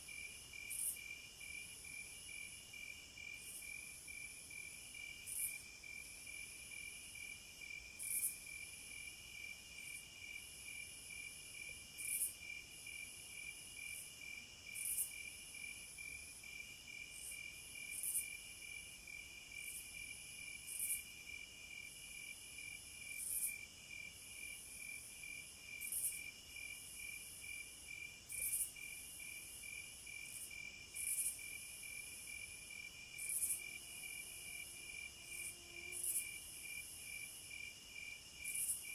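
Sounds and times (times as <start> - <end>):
cicadas chorus: 28.5 - 38.9.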